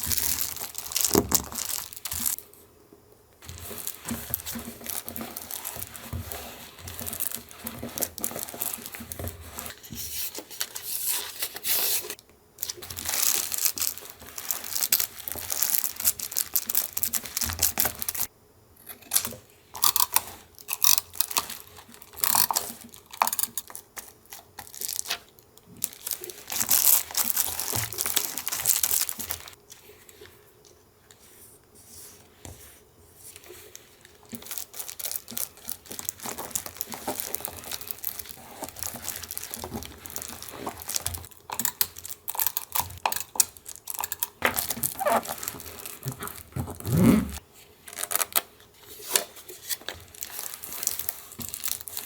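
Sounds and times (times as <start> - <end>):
paper tearing and crinkling: 34.3 - 41.3, 43.8 - 48.4.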